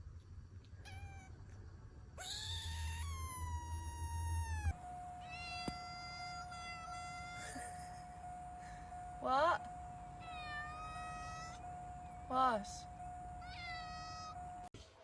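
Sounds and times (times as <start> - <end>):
cat meowing: 0.8 - 1.4, 2.2 - 7.5, 10.2 - 11.6, 13.4 - 14.5
steady even tone: 4.7 - 14.7.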